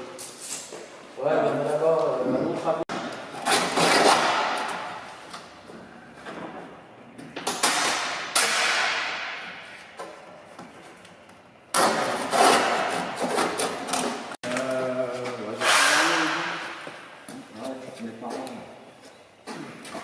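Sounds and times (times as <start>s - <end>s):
rough rapid striking or scraping: 15.5s - 16.8s.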